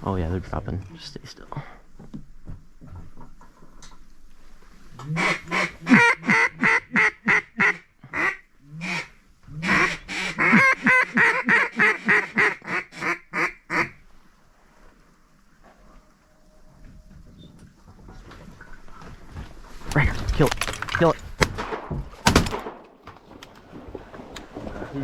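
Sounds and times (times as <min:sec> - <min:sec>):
duck call quacks: 0:05.1 - 0:14.0.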